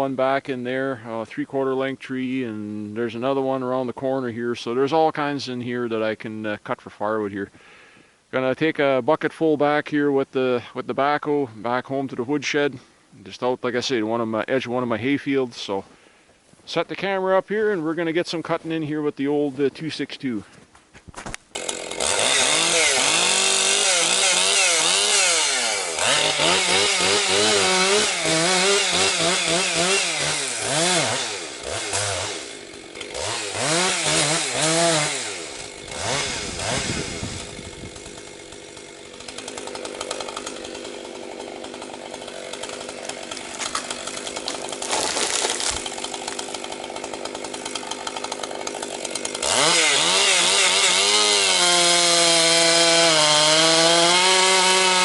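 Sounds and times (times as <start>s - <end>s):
chainsaw revving: 21.5s - 55.0s.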